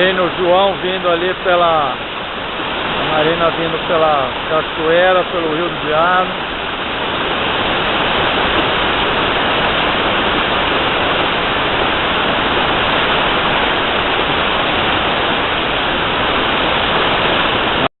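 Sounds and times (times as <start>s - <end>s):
waterfall rushing over rocks: 0.0s - 17.9s.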